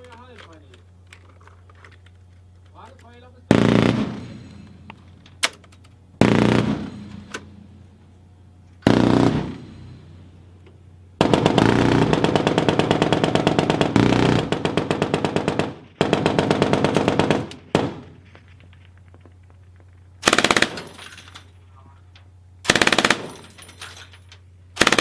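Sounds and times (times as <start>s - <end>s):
automatic gunfire bursts: 3.5s - 4.4s, 6.2s - 7.1s, 8.8s - 9.8s, 11.2s - 18.0s, 20.2s - 21.0s, 22.6s - 23.6s, 24.8s - 25.0s.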